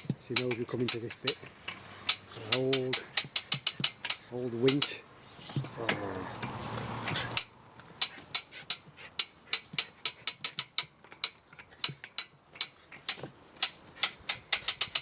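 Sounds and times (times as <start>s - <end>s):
winch ratchet clicking: 9.5s - 15.0s.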